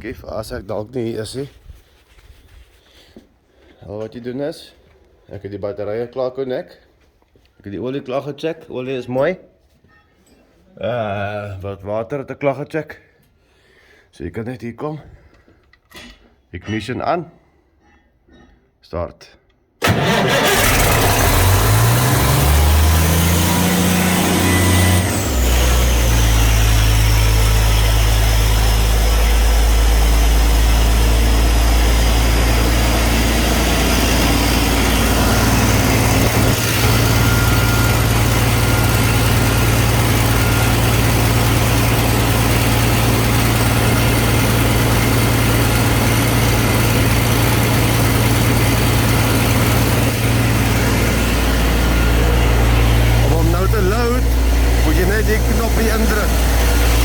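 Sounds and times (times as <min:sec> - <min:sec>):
diesel compressor engine running: 0:19.8 - 0:57.0
high whine dropping in pitch: 0:22.2 - 0:41.0, 0:49.2 - 0:57.0.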